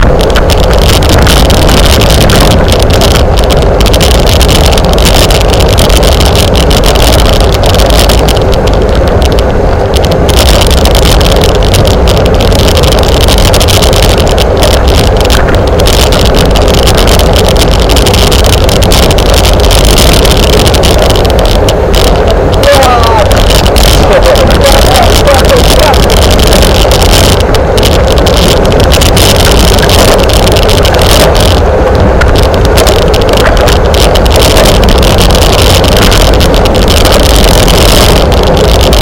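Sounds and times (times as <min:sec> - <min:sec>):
wind buffeting microphone: 0:00.0 - 0:39.0.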